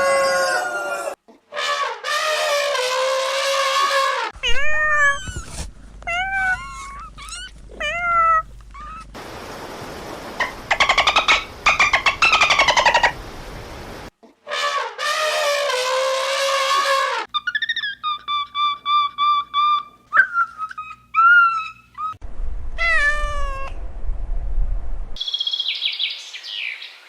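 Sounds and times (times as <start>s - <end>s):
background noise: 0.0s - 22.9s
cat meowing: 4.4s - 9.1s, 22.8s - 23.8s.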